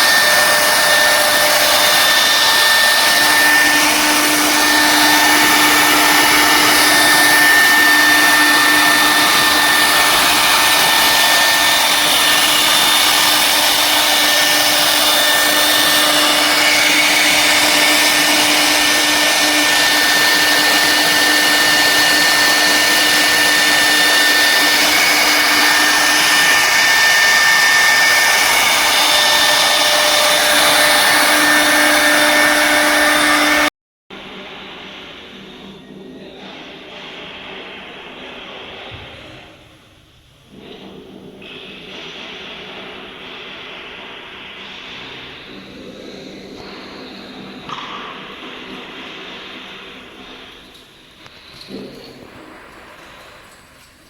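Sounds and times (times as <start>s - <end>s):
wood router spindles whirring: 0.0s - 33.7s.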